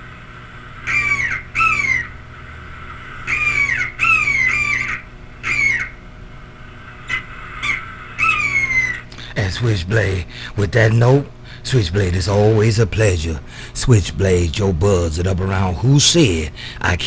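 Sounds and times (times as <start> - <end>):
steady low hum: 0.0 - 17.0
bird-like squawks: 0.1 - 10.6.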